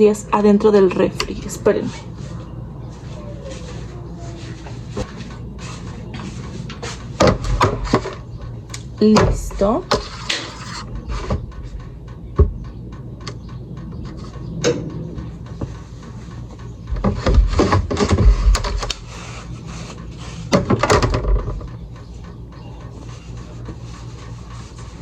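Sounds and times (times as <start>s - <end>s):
rubbing and clattering: 9.6s - 12.8s.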